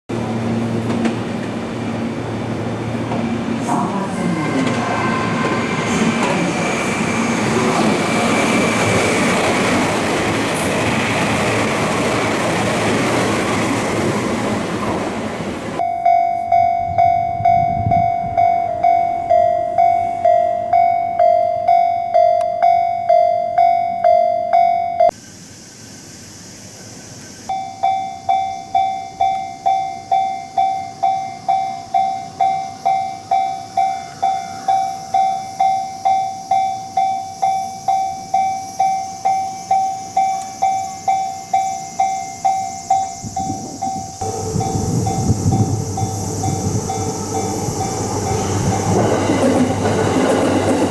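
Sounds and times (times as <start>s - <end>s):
train wheels on track: 0.1s - 15.8s, 25.0s - 50.9s
single-tone crossing alarm: 15.8s - 25.2s, 27.5s - 50.9s
two-tone crossing alarm bell: 15.8s - 25.2s, 27.5s - 50.9s.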